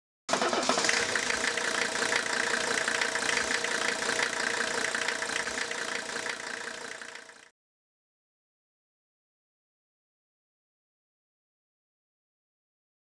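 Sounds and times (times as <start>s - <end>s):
engine running: 0.3s - 7.5s.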